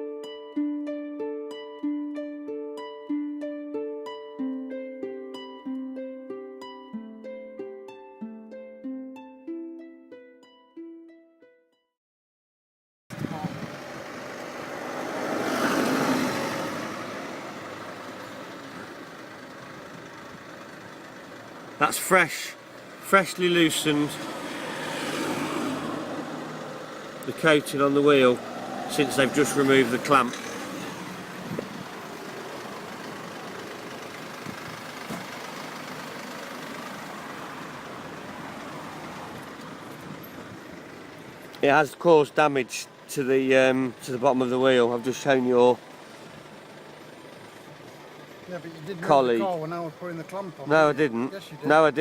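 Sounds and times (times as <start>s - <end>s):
traffic: 0.0s - 9.9s, 13.1s - 52.0s
engine running: 13.1s - 52.0s
road vehicle passing: 13.2s - 52.0s.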